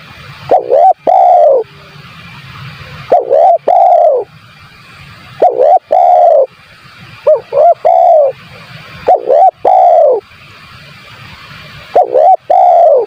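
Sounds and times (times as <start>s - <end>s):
dove cooing: 0.5s - 1.7s, 3.1s - 4.3s, 5.4s - 6.5s, 7.2s - 8.4s, 9.1s - 10.2s, 11.9s - 13.0s.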